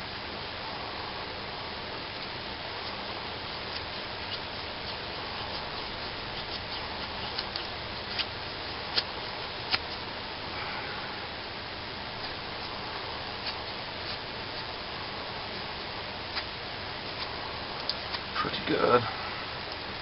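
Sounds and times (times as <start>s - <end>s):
knife shaving wood: 2.0s - 10.6s, 11.6s - 18.6s.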